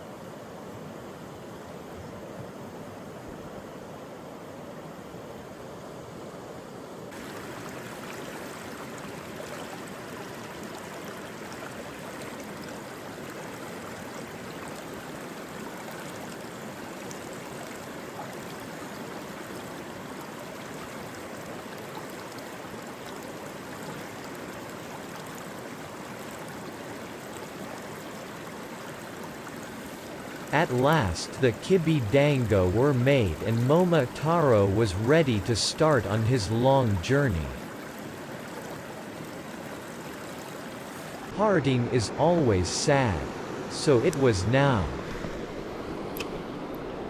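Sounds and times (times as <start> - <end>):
stream running over rocks: 7.1 - 41.6.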